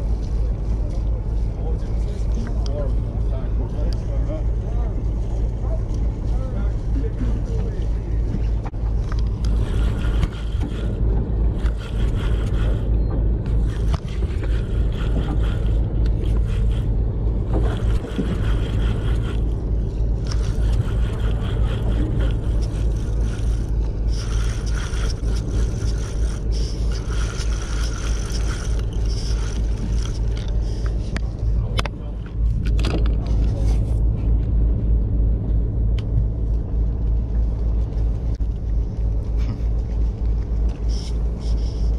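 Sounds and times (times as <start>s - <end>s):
boat engine rumble: 0.0s - 41.9s
scraping: 13.5s - 31.3s.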